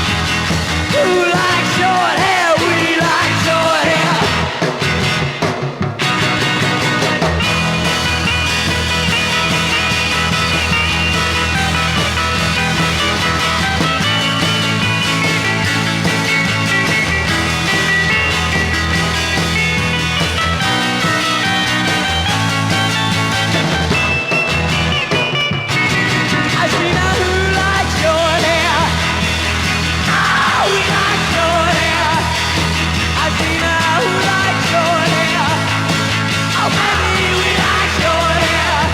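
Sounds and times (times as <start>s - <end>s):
garage rock band playing: 0.0s - 38.9s.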